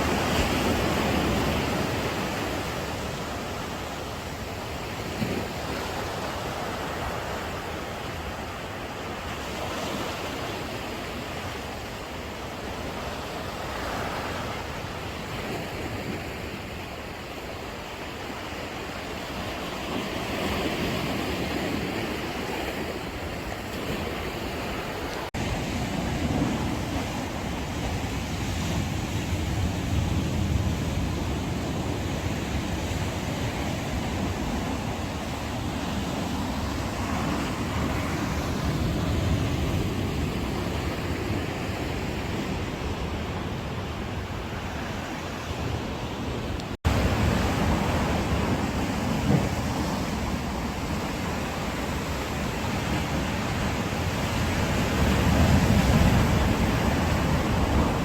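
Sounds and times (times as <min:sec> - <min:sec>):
sea waves breaking on rocks: 0:44.7 - 0:58.0.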